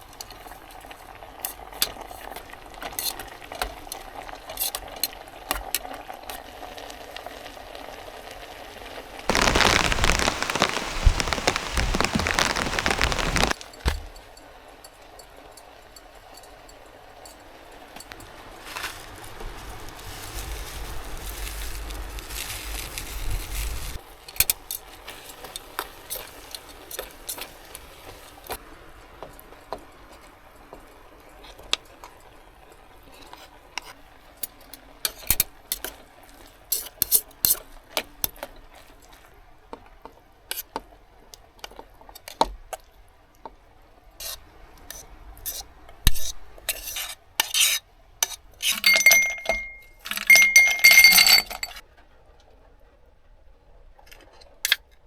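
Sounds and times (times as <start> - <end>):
scraping bursts: 9.3 - 13.6
small hard objects clicking: 9.3 - 13.6.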